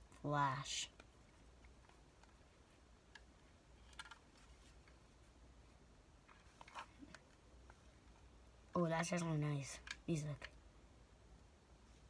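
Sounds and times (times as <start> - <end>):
faint clicks and taps of handling: 0.9 - 5.2.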